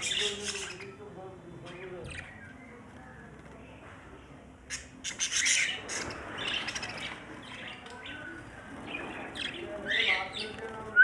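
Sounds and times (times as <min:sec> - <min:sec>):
budgerigars chirping: 0:00.0 - 0:01.0.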